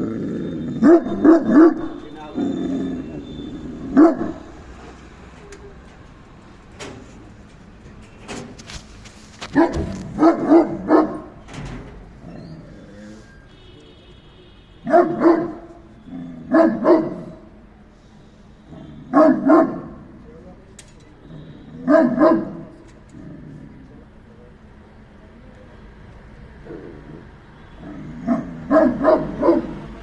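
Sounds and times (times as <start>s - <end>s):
large dog barking: 0.0s - 4.7s, 9.5s - 11.4s, 14.8s - 17.6s, 18.7s - 20.1s, 21.7s - 22.8s, 27.8s - 30.0s.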